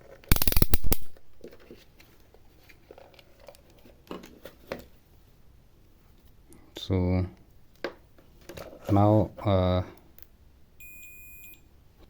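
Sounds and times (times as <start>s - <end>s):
crinkling rattle: 0.3s - 1.8s.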